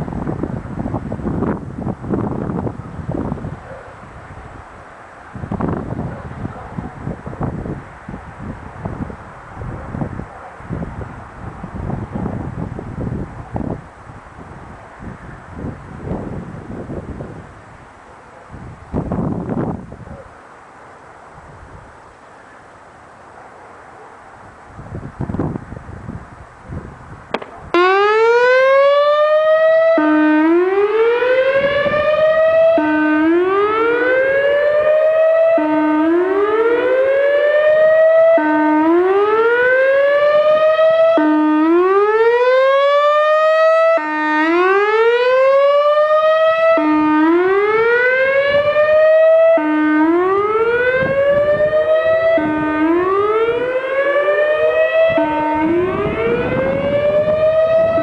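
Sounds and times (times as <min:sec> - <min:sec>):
short pop: 0:27.3 - 0:27.6
siren whoop tone: 0:27.3 - 0:58.0.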